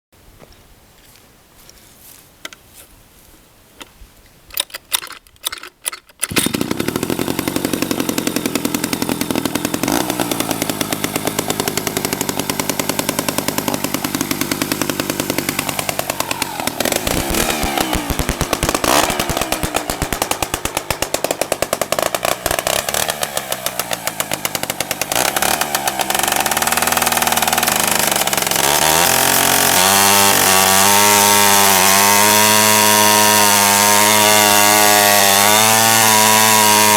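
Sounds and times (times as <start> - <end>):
chainsaw engine revving: 6.2 - 36.9.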